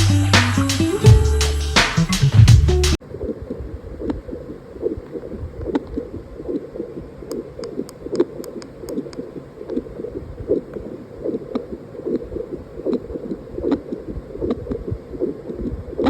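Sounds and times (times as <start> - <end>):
music: 0.0 - 3.0.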